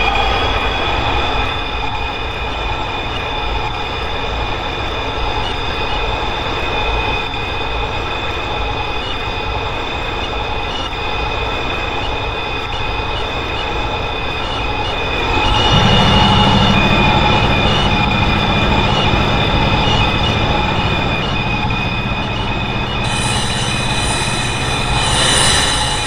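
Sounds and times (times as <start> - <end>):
subway wheels rumbling on track: 0.0 - 26.0
high-pitched wheel squeal: 22.3 - 26.0.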